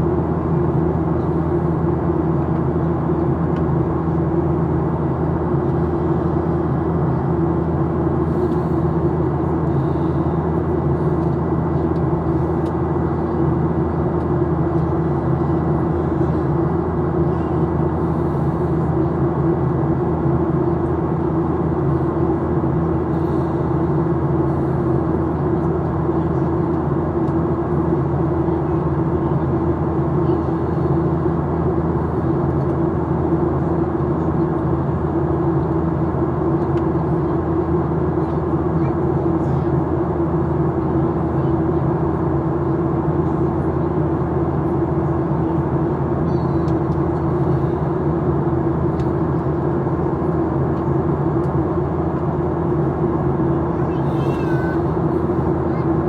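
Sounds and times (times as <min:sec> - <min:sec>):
jet engines humming: 0:00.0 - 0:56.0
air rushing along fuselage: 0:42.0 - 0:56.0.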